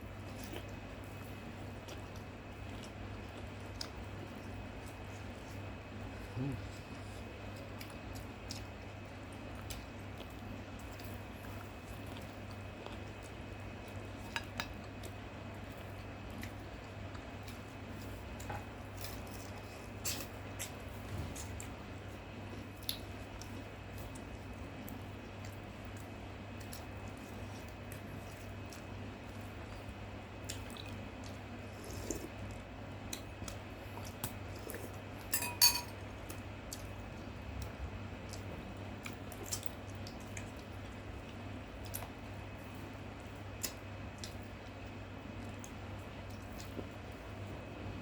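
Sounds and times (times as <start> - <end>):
steady low hum: 0.0 - 48.0
cutlery clinking against plates: 35.3 - 36.0.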